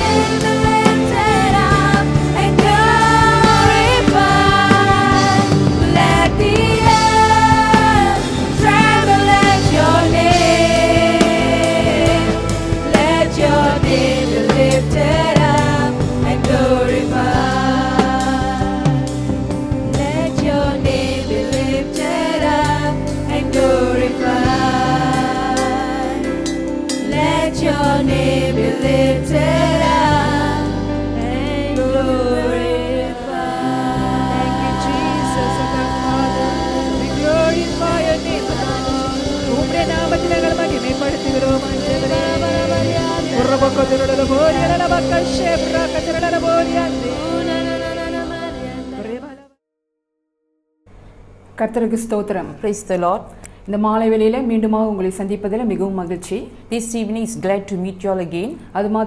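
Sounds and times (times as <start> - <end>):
person singing: 0.0 - 19.3, 19.9 - 49.5
keyboard chords: 0.0 - 49.4
bass: 0.0 - 49.5
light steady beat: 33.8 - 49.2.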